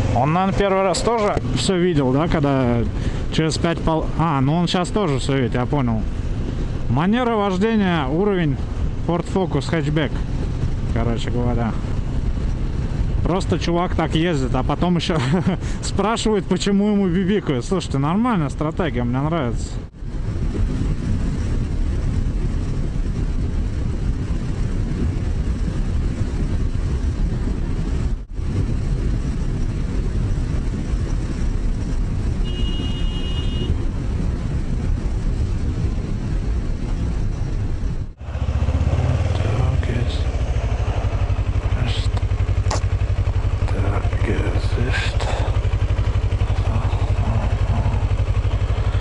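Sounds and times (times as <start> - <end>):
wind noise: 0.0 - 49.0
motorcycle engine running: 38.2 - 49.0.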